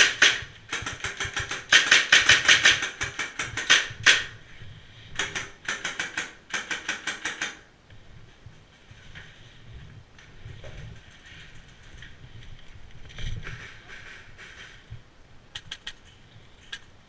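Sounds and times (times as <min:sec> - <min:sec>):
airsoft guns firing bursts: 0:00.0 - 0:04.4, 0:05.2 - 0:07.7.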